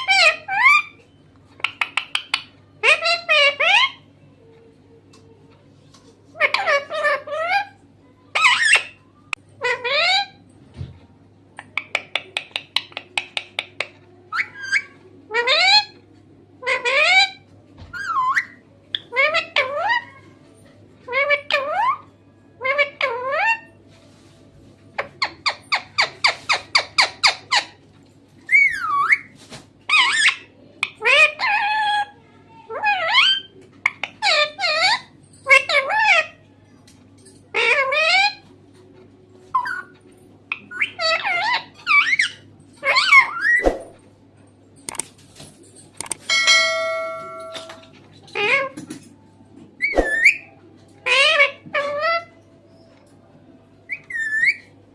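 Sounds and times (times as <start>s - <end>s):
parrot squawking: 0.0s - 1.0s, 1.6s - 4.1s, 9.6s - 10.4s, 16.6s - 20.2s, 29.9s - 36.4s, 37.5s - 38.4s, 39.5s - 43.7s, 49.8s - 52.4s, 53.9s - 54.7s
bell-like ringing tone: 46.3s - 47.8s
parrot call: 53.9s - 54.7s.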